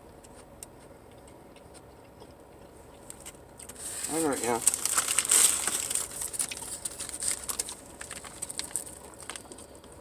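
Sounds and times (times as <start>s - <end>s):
person chewing: 0.0s - 10.0s
small rustles: 3.0s - 9.6s.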